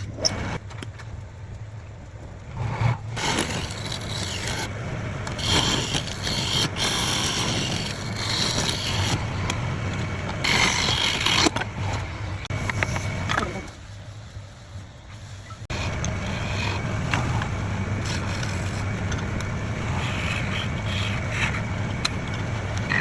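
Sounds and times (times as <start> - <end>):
wood lathe motor humming: 2.5 - 13.4, 15.7 - 23.0
turning tool scraping wood: 2.6 - 13.6, 15.7 - 23.0.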